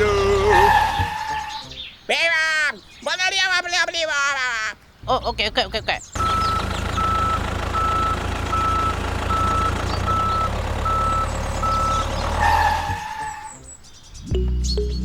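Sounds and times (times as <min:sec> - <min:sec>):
truck engine running: 0:06.2 - 0:13.5
reversing alarm beeping: 0:06.2 - 0:13.6.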